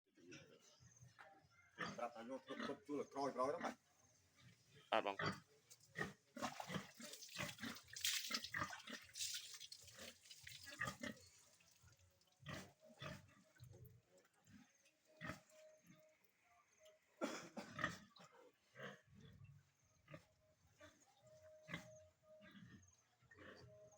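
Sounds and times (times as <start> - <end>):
pigs grunting: 1.7 - 3.8, 4.4 - 9.1, 9.8 - 11.4, 12.3 - 16.0, 17.2 - 23.9.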